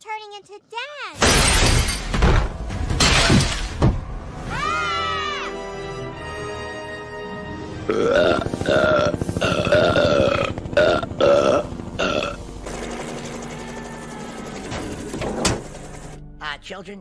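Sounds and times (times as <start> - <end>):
background music: 1.9 - 17.0
loud cartoon burps: 7.9 - 12.4.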